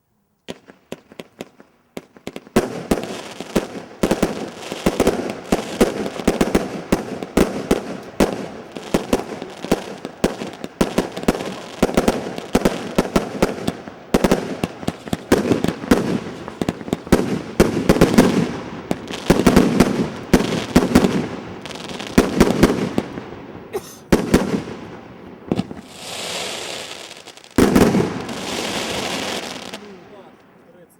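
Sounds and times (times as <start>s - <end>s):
fireworks barrage: 0.5s - 30.9s.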